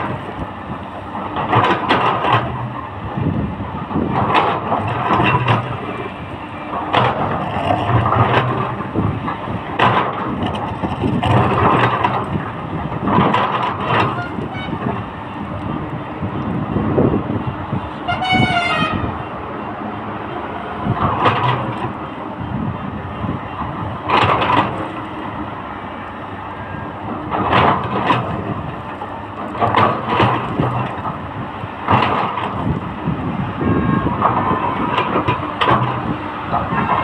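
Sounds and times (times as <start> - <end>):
excavator engine running: 0.0 - 37.0
metallic scraping and clanking: 4.1 - 15.2
vehicle horn toot: 14.0 - 14.9, 18.0 - 19.1, 33.6 - 34.9.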